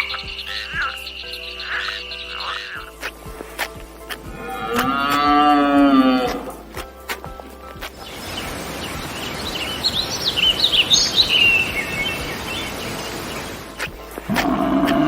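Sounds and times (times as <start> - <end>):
outdoor ambient noise: 0.0 - 15.0
small birds chirping: 0.0 - 15.0.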